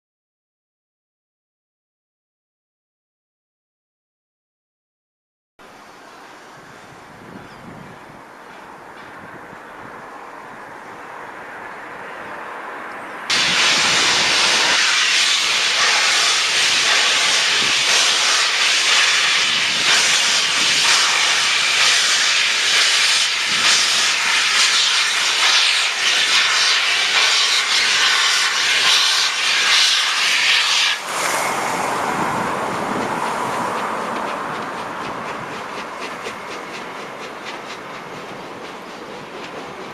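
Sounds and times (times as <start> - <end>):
steam locomotive hissing steam: 13.3 - 39.9.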